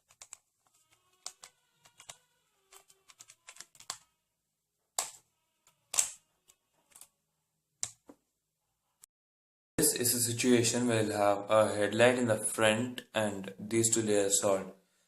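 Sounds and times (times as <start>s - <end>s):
puzzle cube plastic clicks: 0.0s - 4.1s, 5.0s - 5.2s, 5.9s - 6.2s.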